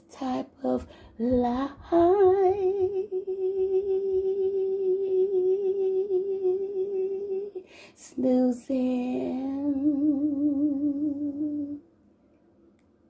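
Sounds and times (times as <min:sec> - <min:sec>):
woman humming with vibrato: 0:02.1 - 0:07.6.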